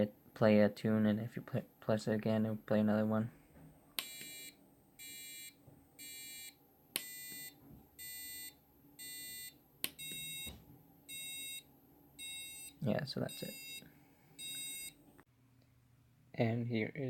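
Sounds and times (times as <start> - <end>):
piezo buzzer beeping: 4.0 - 15.0.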